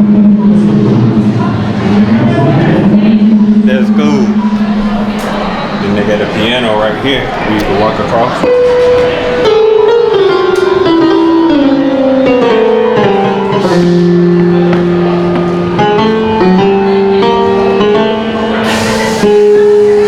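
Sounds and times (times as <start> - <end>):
higher melody line: 0.0 - 6.7, 8.4 - 20.0
music with held notes: 8.4 - 20.0.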